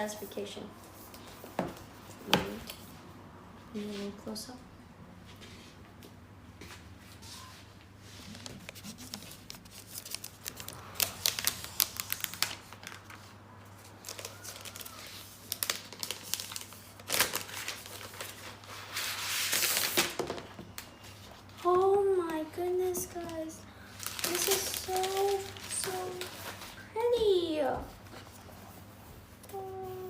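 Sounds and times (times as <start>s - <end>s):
plastic wrapping tearing and crinkling: 8.2s - 20.3s, 23.1s - 26.9s.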